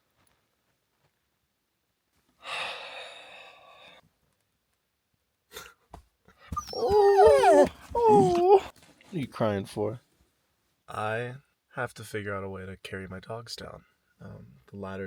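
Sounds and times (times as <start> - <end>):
breathy sigh: 2.4 - 4.0
dog whining: 6.5 - 8.7.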